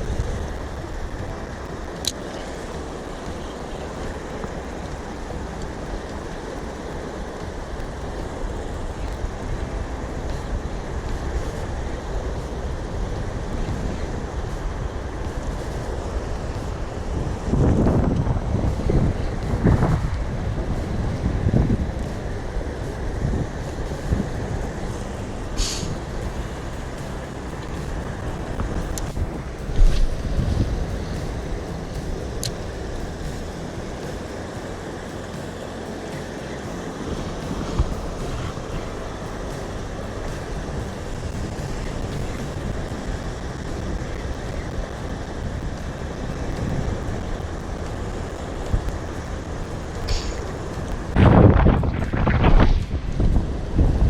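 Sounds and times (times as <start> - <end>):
wind rumble on microphone: 0.0 - 54.0
brief hiss: 23.7 - 42.7.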